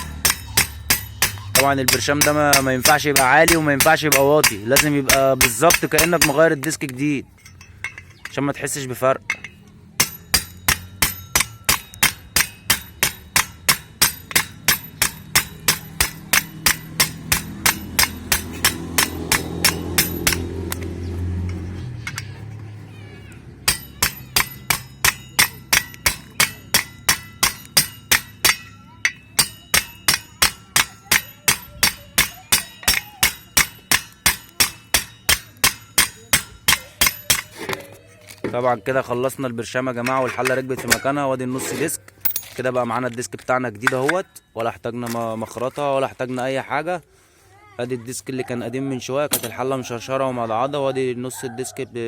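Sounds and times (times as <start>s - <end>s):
hammer striking metal rivets: 0.0s - 6.4s, 9.3s - 20.8s, 23.6s - 37.6s.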